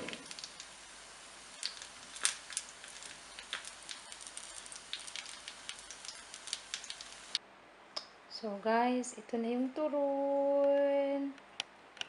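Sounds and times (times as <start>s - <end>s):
hot oil crackling and popping: 0.0s - 7.4s.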